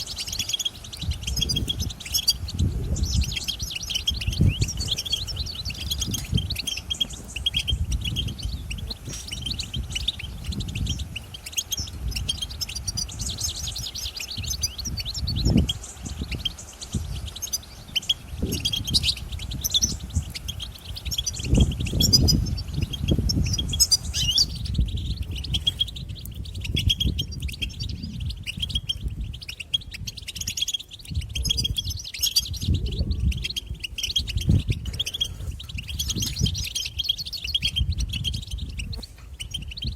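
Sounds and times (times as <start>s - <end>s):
goldfinches twittering: 0.0s - 39.9s
low rumbles and thuds: 1.1s - 11.2s.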